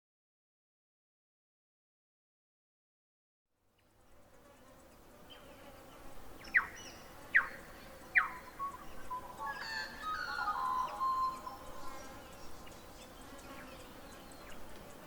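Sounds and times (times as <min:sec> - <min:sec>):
outdoor ambience hiss: 0:03.6 - 0:15.0
birds calling: 0:06.4 - 0:15.0.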